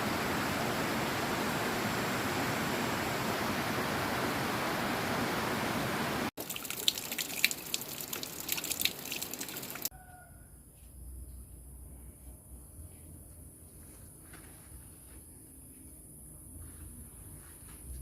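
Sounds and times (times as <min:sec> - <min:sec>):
waterfall rushing: 0:00.0 - 0:06.3
water trickling and dripping: 0:06.4 - 0:09.9.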